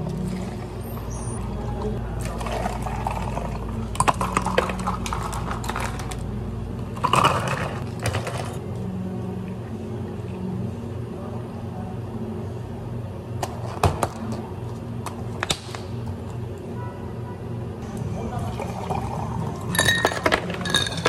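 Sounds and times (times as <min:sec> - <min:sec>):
cafe equipment humming: 0:00.0 - 0:21.0
clinks of drink preparation: 0:18.6 - 0:21.0.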